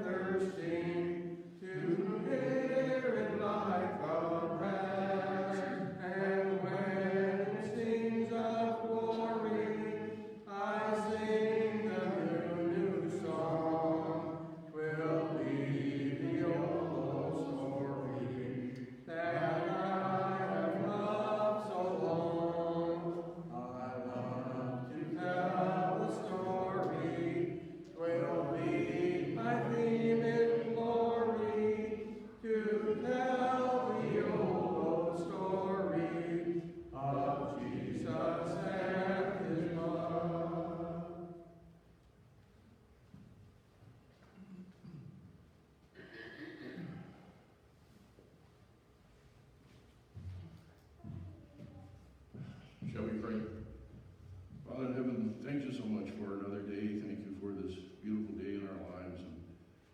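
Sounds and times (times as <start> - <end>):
congregation singing a hymn: 0.0 - 41.8, 54.5 - 59.9.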